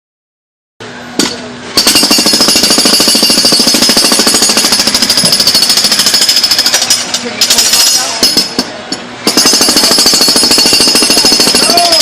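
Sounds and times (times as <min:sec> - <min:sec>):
jackhammer hammering: 0:01.2 - 0:12.0.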